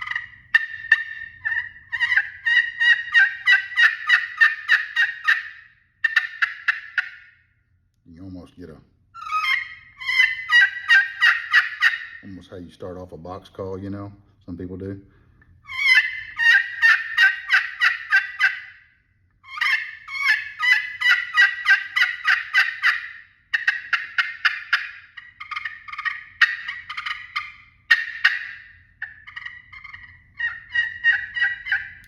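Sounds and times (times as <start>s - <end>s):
turkey call hen yelps: 0.0s - 7.4s, 9.2s - 12.3s, 15.6s - 32.0s.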